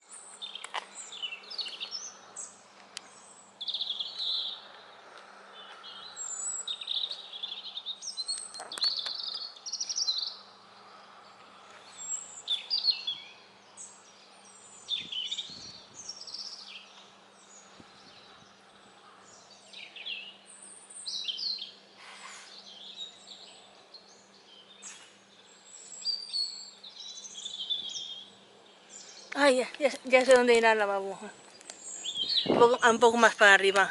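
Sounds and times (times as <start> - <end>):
birds singing: 0.0 - 33.9.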